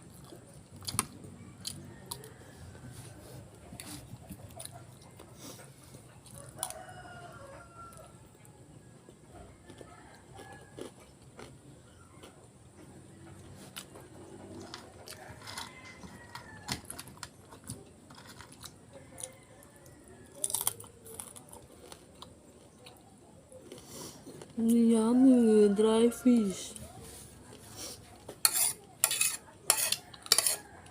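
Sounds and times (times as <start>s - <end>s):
person chewing crunchy food: 0.0s - 6.8s, 9.0s - 19.3s, 20.3s - 24.6s.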